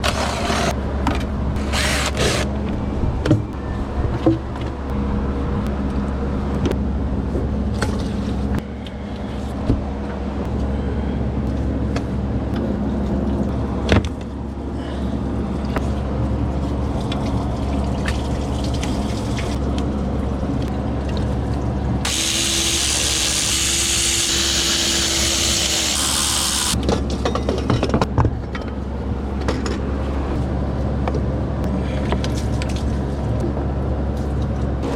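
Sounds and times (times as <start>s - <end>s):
steady low hum: 0.0s - 34.9s
loud steady hiss with tone: 22.1s - 26.8s.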